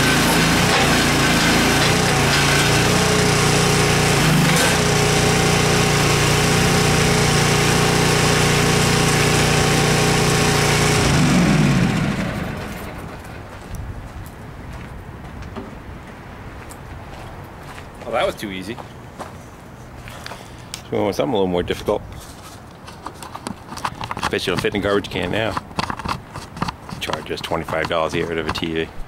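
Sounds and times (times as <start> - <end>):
backhoe engine under load: 0.0 - 13.7, 22.8 - 29.0.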